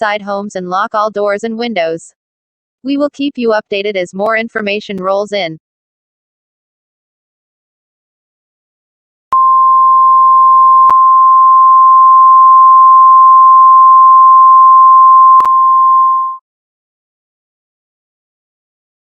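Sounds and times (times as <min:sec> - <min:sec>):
steady alert beep: 0:14.6 - 0:16.4.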